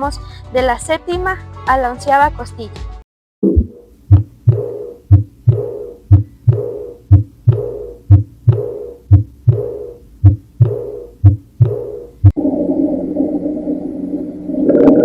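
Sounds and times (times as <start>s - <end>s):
heartbeat lub-dub: 3.4s - 12.4s.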